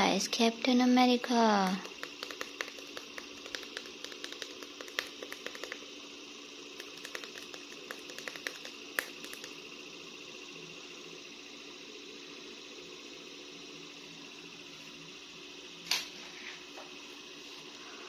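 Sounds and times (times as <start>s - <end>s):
faint steady hum: 0.0s - 18.0s
plastic figures clicking: 1.6s - 5.8s.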